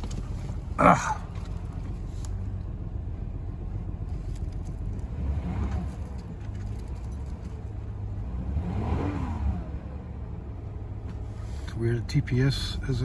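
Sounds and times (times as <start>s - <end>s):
car engine idling: 0.0s - 13.0s
engine revving: 4.1s - 7.5s, 8.1s - 10.5s.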